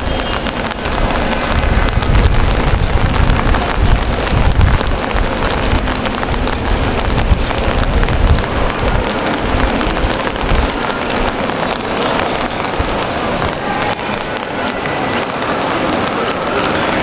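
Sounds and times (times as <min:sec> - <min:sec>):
continuous low rumble: 0:00.0 - 0:15.3
rain falling on street: 0:00.0 - 0:17.0
raindrops ticking: 0:00.0 - 0:17.0.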